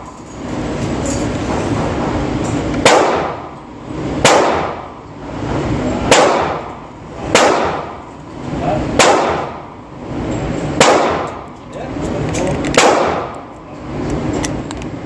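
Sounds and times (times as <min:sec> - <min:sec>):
pistol shots: 0:02.8 - 0:03.5, 0:04.2 - 0:04.9, 0:06.1 - 0:08.0, 0:09.0 - 0:09.7, 0:10.8 - 0:11.5, 0:12.7 - 0:13.5.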